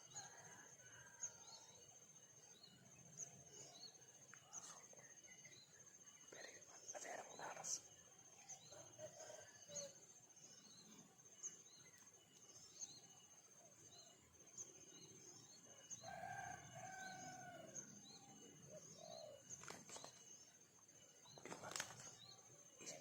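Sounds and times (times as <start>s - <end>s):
faint rooster crow: 0.0s - 2.0s, 8.5s - 10.1s, 15.6s - 19.5s.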